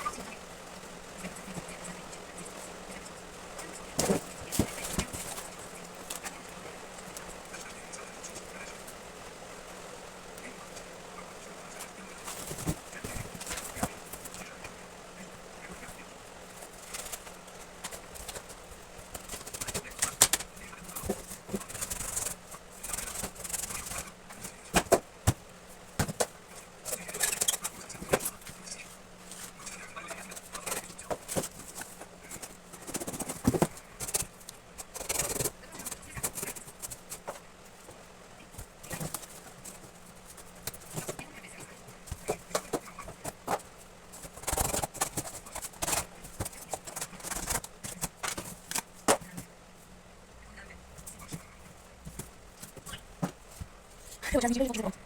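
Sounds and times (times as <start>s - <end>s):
cardboard and paper rustling: 0.0s - 49.9s, 50.9s - 54.9s
cardboard clicks taps and rustles: 16.6s - 28.8s.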